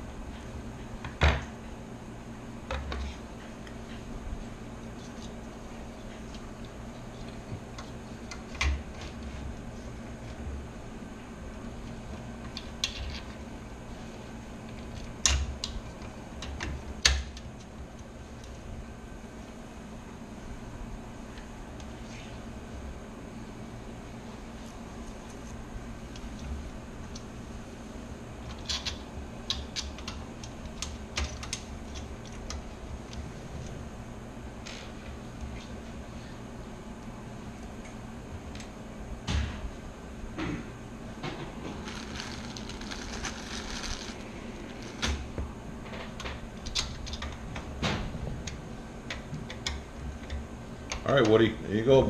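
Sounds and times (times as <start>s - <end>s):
low steady hum: 0.0s - 52.0s
hands handling computer parts: 41.3s - 47.3s.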